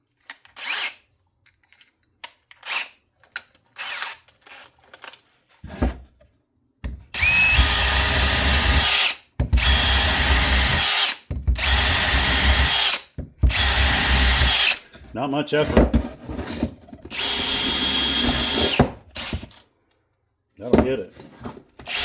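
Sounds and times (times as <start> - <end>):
screw gun drilling into wood: 0.6 - 1.0, 3.8 - 4.3, 7.1 - 14.8, 17.1 - 19.6.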